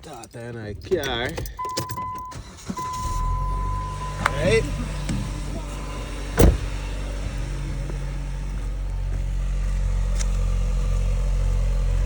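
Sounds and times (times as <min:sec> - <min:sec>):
car engine idling: 0:00.0 - 0:12.0
sharp thump: 0:06.3 - 0:07.3.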